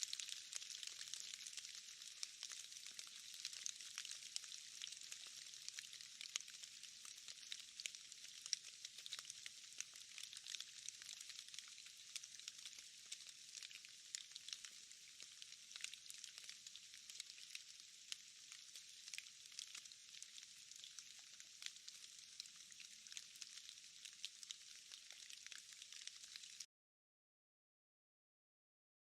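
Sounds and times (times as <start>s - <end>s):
rain falling on leaves: 0.0s - 26.7s.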